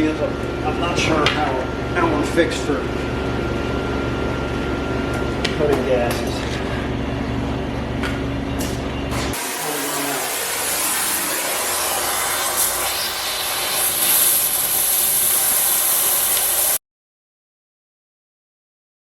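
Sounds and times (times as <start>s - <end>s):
gas torch hissing: 9.3s - 16.8s.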